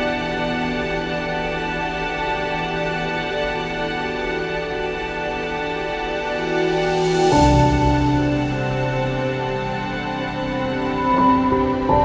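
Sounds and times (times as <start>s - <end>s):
soft cymbal-like swell: 5.2s - 12.0s.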